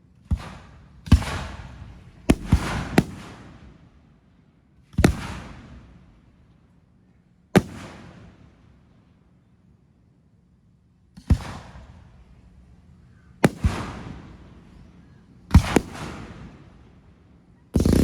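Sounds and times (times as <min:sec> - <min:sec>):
fireworks bangs: 0:00.3 - 0:03.5, 0:17.8 - 0:18.0.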